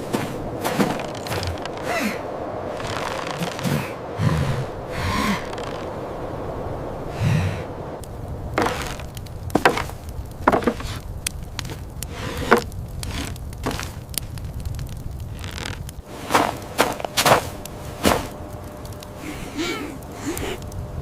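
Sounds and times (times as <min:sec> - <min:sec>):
low steady rumble: 0:00.0 - 0:21.0
breathy exhale: 0:01.8 - 0:02.4, 0:03.4 - 0:05.7, 0:07.1 - 0:07.9, 0:19.1 - 0:20.7.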